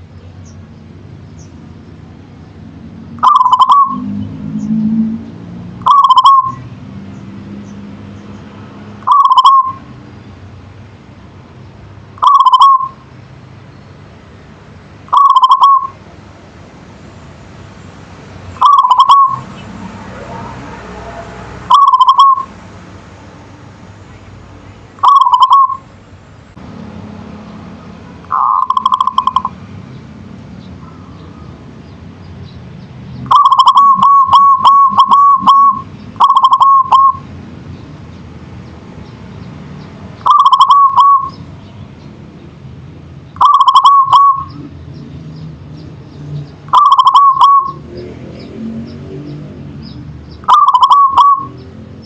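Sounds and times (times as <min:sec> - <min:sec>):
dove cooing: 0:03.2 - 0:04.1, 0:05.8 - 0:06.6, 0:09.0 - 0:09.8, 0:12.2 - 0:13.0, 0:15.1 - 0:16.0, 0:18.6 - 0:19.5, 0:21.7 - 0:22.5, 0:25.0 - 0:25.8, 0:28.2 - 0:29.6, 0:33.2 - 0:37.2, 0:40.2 - 0:41.3, 0:43.4 - 0:44.7, 0:46.7 - 0:47.8, 0:50.4 - 0:51.6.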